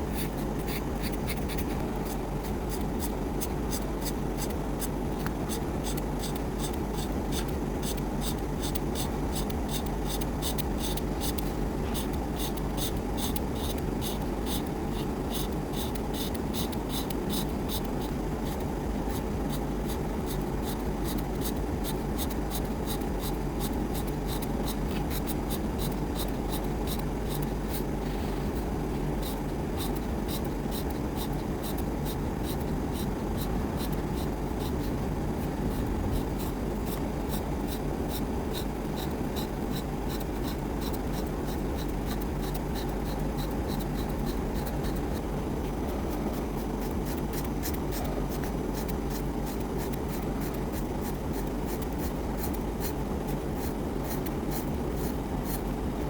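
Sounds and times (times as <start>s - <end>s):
steady low hum: 0.0s - 56.0s
scratchy colouring strokes on paper: 45.9s - 55.8s.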